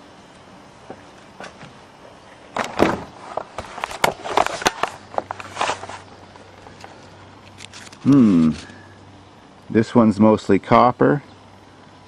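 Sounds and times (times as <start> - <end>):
paper receipts rustling: 3.2 - 8.9.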